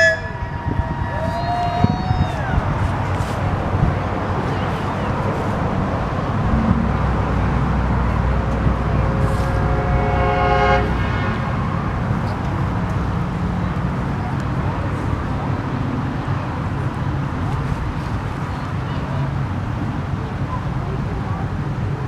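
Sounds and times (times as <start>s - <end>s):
horn blast: 0.0s - 0.8s, 5.0s - 13.8s
low engine rumble: 0.0s - 22.0s
outdoor background noise: 0.0s - 22.0s.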